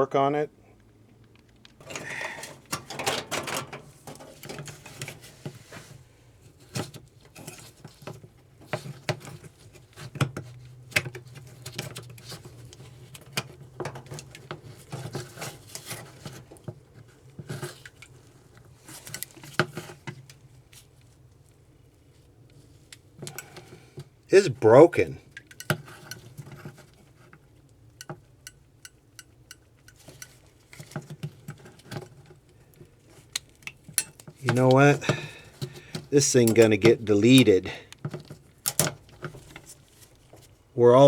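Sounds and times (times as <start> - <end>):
hands clicking and rattling parts: 0.8 - 5.6, 6.7 - 21.0, 22.4 - 24.2, 25.3 - 40.6.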